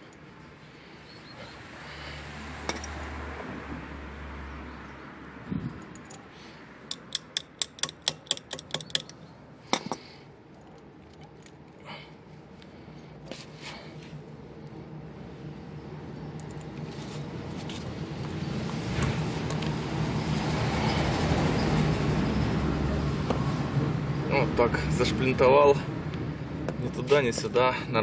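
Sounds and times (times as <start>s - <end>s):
sharp metallic clicks: 6.9s - 9.2s.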